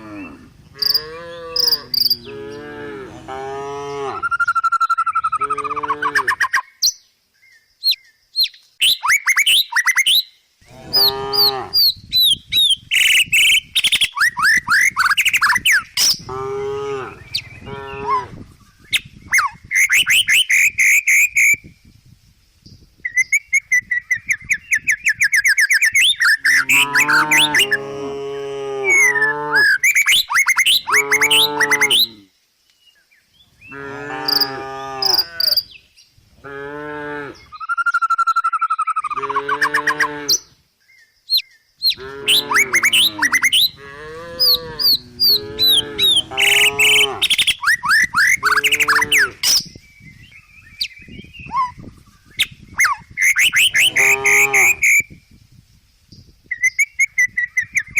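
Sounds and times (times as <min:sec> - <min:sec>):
birds chirping: 0:00.0 - 0:03.1, 0:03.9 - 0:21.7, 0:22.7 - 0:27.9, 0:28.9 - 0:36.2, 0:37.2 - 0:55.1
cows mooing: 0:00.0 - 0:04.3, 0:10.7 - 0:11.8, 0:16.2 - 0:18.4, 0:26.4 - 0:29.8, 0:30.9 - 0:32.2, 0:33.7 - 0:35.6, 0:36.4 - 0:37.4, 0:39.2 - 0:40.4, 0:42.0 - 0:47.4, 0:48.3 - 0:49.4, 0:53.7 - 0:54.8.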